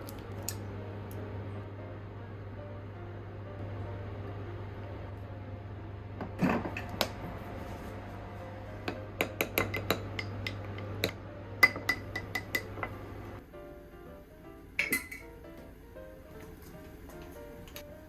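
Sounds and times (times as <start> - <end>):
low hum: 0.0 - 13.4
utensils clinking against dishes: 9.3 - 13.0, 14.8 - 15.3.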